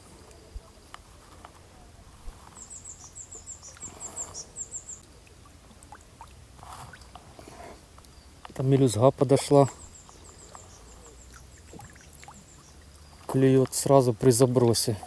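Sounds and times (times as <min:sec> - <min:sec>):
faint clicks and rustles: 0:00.0 - 0:09.0
small bird chirping: 0:02.5 - 0:05.1, 0:08.1 - 0:13.4.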